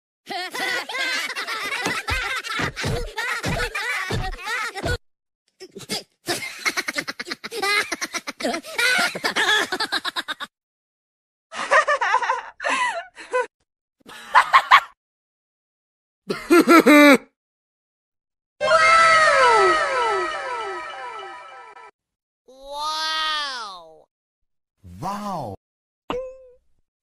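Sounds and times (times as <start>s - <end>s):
comic voice sound effects: 24.9s - 25.6s.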